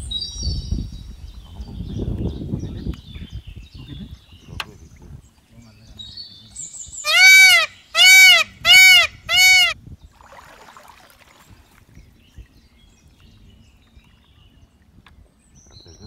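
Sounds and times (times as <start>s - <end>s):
loud animal calls: 7.0s - 9.8s.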